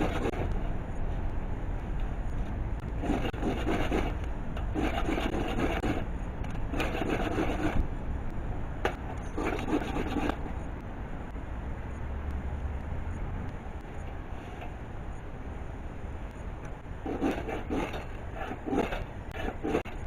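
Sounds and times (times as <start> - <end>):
hand tool rasping on wood: 3.0 - 4.2, 4.8 - 6.0, 6.8 - 7.8, 17.1 - 20.0.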